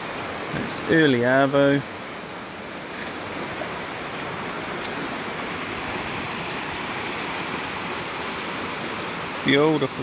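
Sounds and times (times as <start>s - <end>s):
river flowing over stones: 0.0s - 10.0s.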